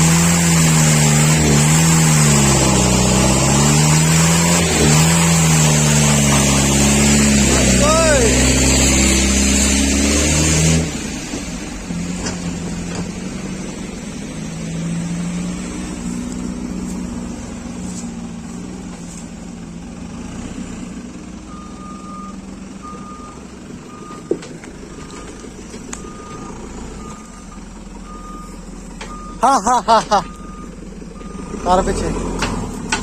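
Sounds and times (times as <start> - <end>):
heavy machinery engine running: 0.0 - 33.0
reversing alarm beeping: 21.5 - 29.6.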